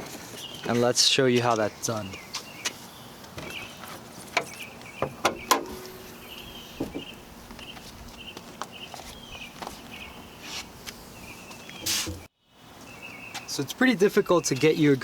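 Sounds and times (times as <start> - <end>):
car hood unlatching and opening: 4.4 - 7.2.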